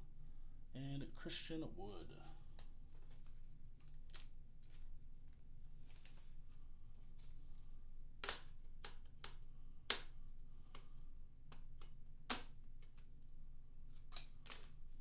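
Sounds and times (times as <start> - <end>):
steady low hum: 0.0 - 8.8
cards snapping and clicking: 2.6 - 4.8, 5.8 - 6.2, 8.2 - 13.1, 13.9 - 14.9.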